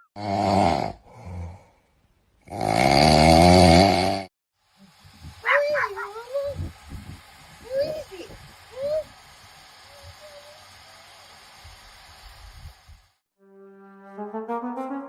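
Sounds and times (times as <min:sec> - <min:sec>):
dog vocalising: 0:05.4 - 0:06.7
dog whining: 0:05.5 - 0:06.6.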